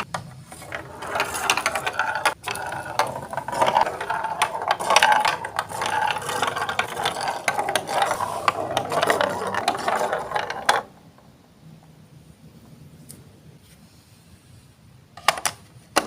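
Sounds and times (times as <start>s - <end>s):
marbles rattling on plastic track: 0.0s - 11.0s.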